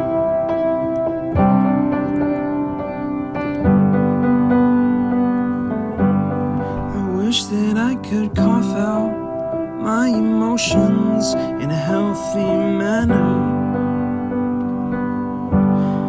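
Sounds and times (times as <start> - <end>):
piano playing slow chords: 0.0 - 16.0
person singing: 6.8 - 13.9.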